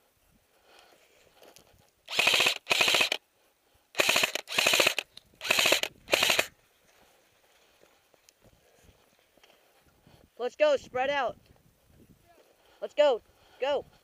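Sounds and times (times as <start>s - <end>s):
airsoft rifle firing bursts: 2.1s - 3.2s, 4.0s - 6.5s.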